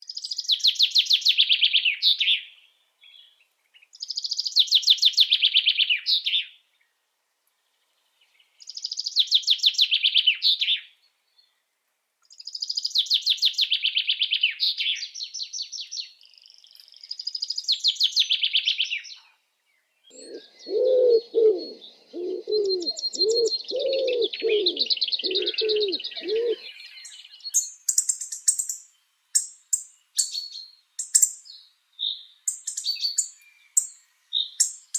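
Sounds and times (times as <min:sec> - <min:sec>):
songbird trilling: 0:12.3 - 0:19.2, 0:20.1 - 0:34.9
dove cooing: 0:20.1 - 0:26.8.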